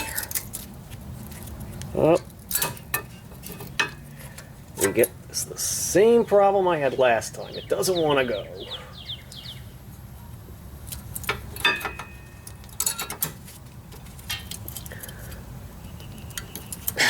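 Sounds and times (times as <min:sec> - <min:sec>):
brake pad clinking on metal: 0:11.3 - 0:13.4.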